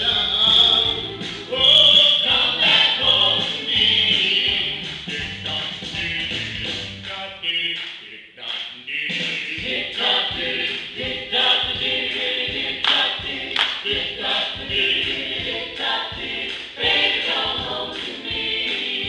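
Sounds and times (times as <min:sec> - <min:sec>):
regular beat: 0:00.0 - 0:19.0
vocal group singing in harmony: 0:00.0 - 0:19.0.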